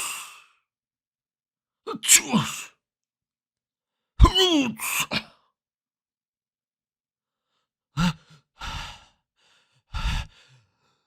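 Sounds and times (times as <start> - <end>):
person sneezing: 2.0 - 2.7.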